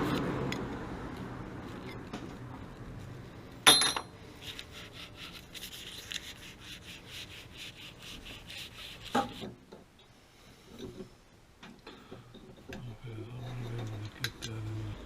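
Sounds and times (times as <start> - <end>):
metallic clank with ringing: 3.7 - 4.2
back-and-forth scraping strokes: 4.3 - 9.7.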